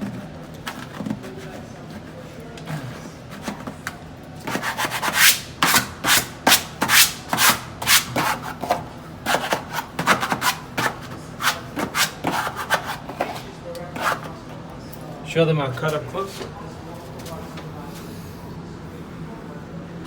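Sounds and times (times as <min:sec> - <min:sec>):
hand tool scraping wallpaper: 0:00.0 - 0:14.4.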